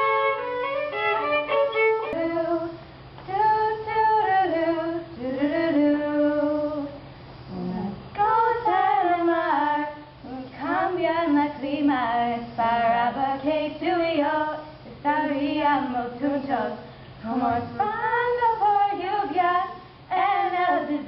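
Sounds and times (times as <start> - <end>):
young woman singing: 1.9 - 7.0, 7.8 - 21.0
singer breathing: 16.8 - 17.2.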